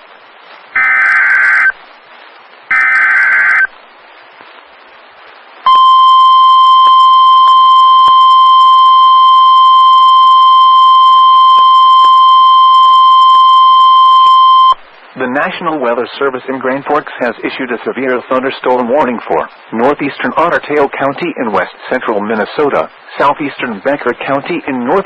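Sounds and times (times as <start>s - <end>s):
steady warning alarm tone: 0.8s - 1.8s, 2.7s - 3.7s, 5.7s - 14.8s
warbling digital data tones: 0.8s - 1.8s, 2.7s - 3.7s.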